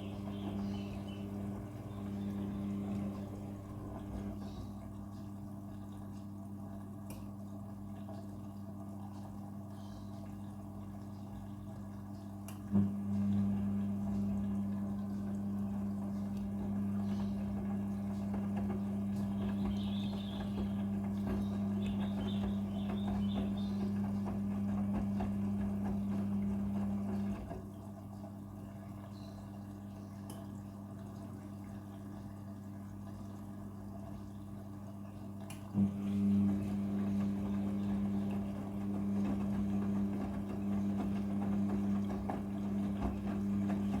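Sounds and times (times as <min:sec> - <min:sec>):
washing machine humming: 0:00.0 - 0:44.0
water running: 0:00.0 - 0:44.0.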